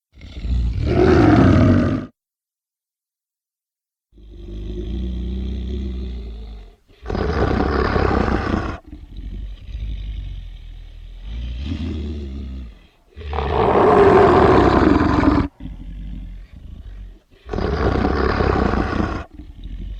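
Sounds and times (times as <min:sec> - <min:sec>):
creature growling: 0:00.2 - 0:02.1, 0:04.2 - 0:19.9
creature roaring: 0:00.2 - 0:02.1, 0:04.2 - 0:09.4, 0:13.1 - 0:19.9.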